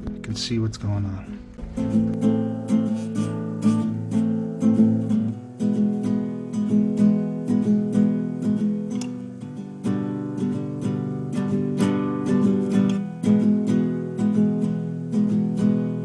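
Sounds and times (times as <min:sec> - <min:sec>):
strummed acoustic guitar: 0:00.0 - 0:16.0.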